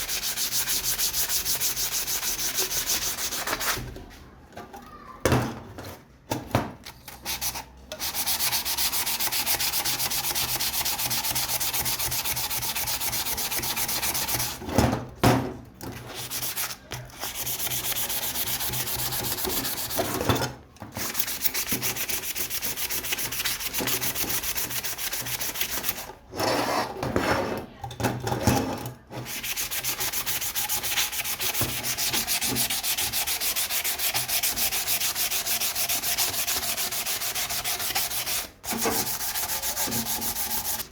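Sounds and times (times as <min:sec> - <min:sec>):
abrasive sanding: 0:29.3 - 0:40.9.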